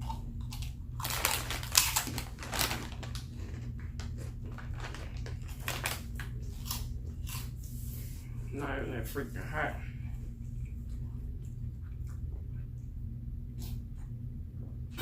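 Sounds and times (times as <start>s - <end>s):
crisp crunching of pork skins: 0.0s - 7.7s.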